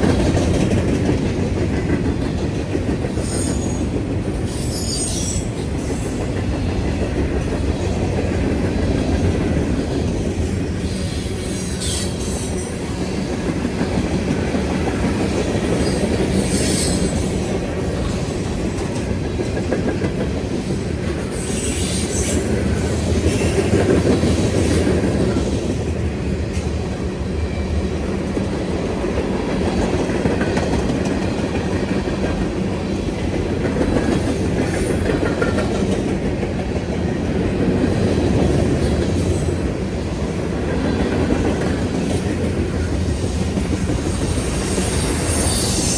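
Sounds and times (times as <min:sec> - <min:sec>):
freight train cars rumbling: 0:00.0 - 0:45.9
high wheel squeals: 0:04.5 - 0:06.1, 0:21.3 - 0:23.7, 0:44.0 - 0:45.9.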